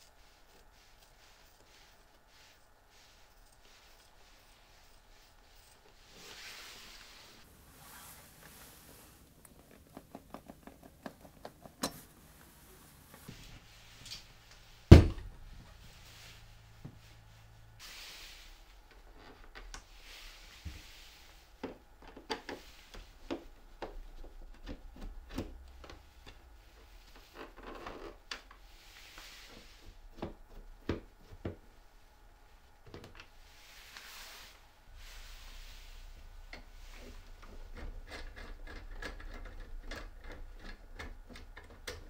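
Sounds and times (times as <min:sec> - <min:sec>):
handling clicks and rubbing: 0:00.0 - 0:13.4.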